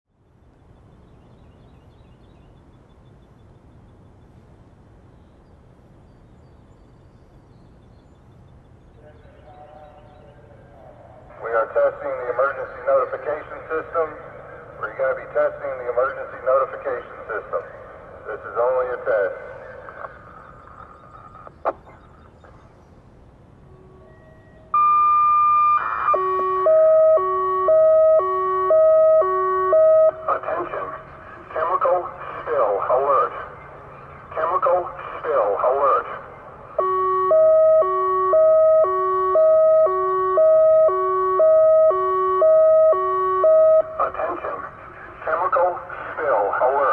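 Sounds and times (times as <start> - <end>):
faint bird chirps: 19.1 - 24.7
electronic siren hi-lo tone: 23.7 - 30.3, 36.8 - 44.0.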